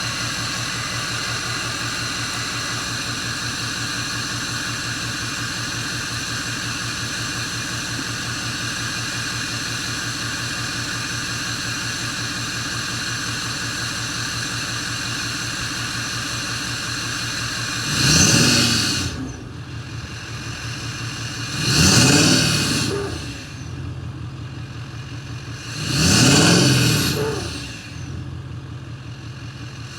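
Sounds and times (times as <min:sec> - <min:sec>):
diesel engine idling: 0:00.0 - 0:29.9
turbo whine: 0:14.5 - 0:29.9
engine revving: 0:16.7 - 0:29.9.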